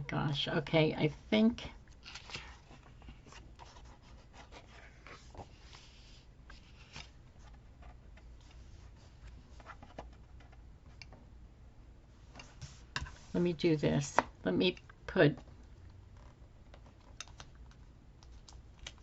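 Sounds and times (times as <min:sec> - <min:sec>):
paper rustling: 0:02.0 - 0:07.6.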